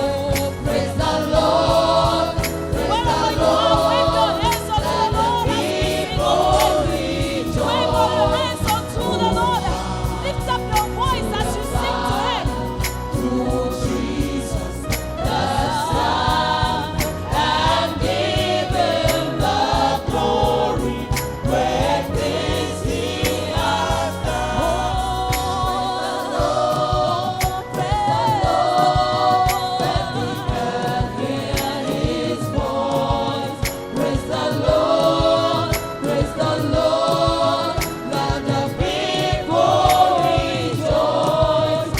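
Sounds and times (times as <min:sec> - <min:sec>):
band with steady beat: 0:00.0 - 0:41.9
gospel choir singing: 0:00.0 - 0:41.9.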